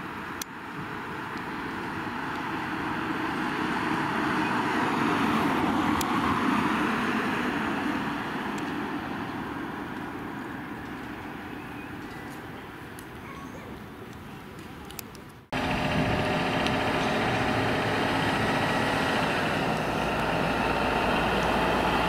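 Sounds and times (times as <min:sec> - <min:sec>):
vehicle passing by: 0:02.0 - 0:09.9, 0:15.5 - 0:22.0.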